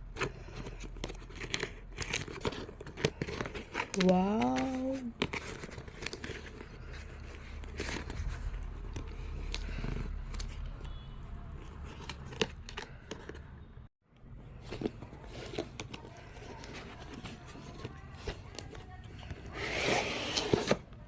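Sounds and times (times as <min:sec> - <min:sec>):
wrapping crinkling: 0:00.0 - 0:10.8.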